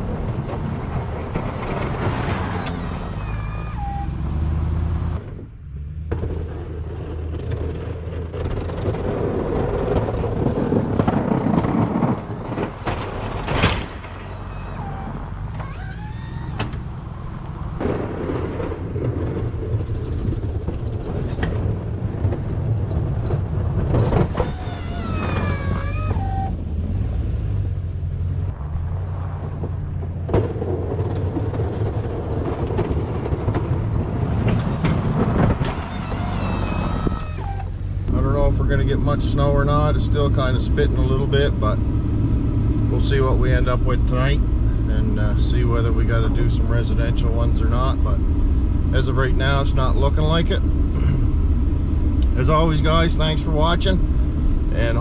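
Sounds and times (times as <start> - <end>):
short high squeals: 1.7 - 4.7, 12.1 - 17.2, 20.8 - 21.8, 24.0 - 26.6, 34.5 - 37.9.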